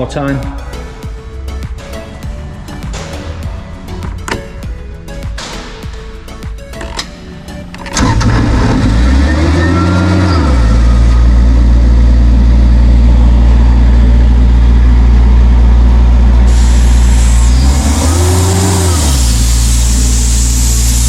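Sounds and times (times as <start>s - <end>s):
diesel compressor engine running: 7.9s - 21.0s.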